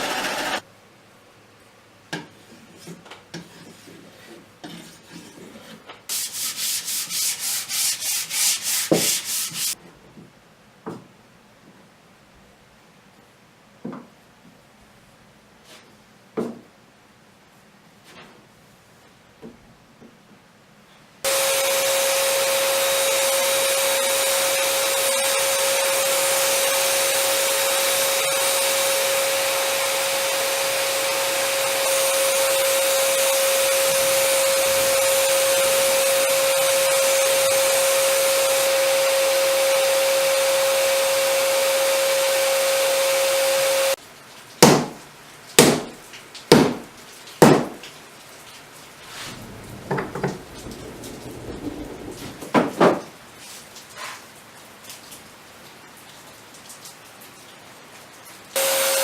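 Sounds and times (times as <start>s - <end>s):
electric power tool on wood: 0.0s - 0.6s, 21.3s - 44.0s, 58.6s - 59.0s
sharp knocks: 47.4s - 47.8s.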